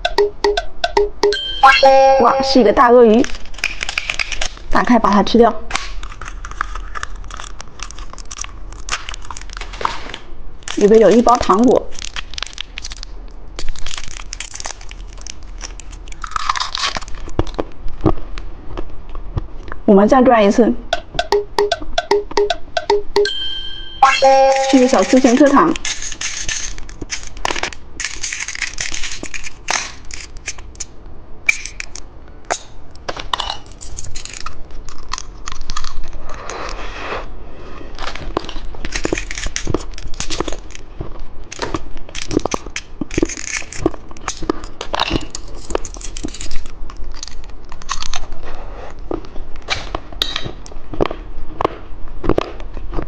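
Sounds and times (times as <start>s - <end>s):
plastic packaging tearing and crinkling: 3.2s - 4.8s, 5.7s - 18.2s, 24.7s - 30.9s, 31.5s - 36.4s, 38.0s - 48.4s.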